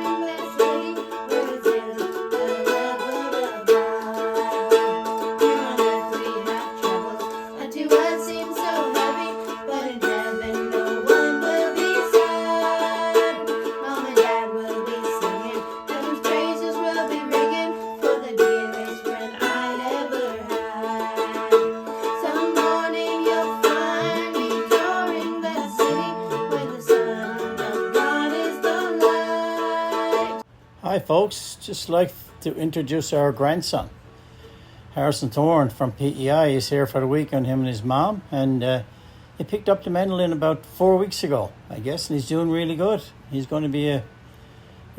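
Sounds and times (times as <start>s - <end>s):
long held tones: 0.0s - 30.5s
mandolin picking a tune: 0.0s - 30.5s.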